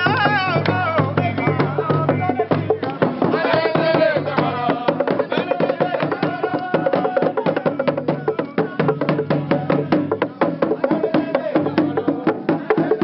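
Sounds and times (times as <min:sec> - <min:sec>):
percussion music with wooden clicks: 0:00.0 - 0:13.0.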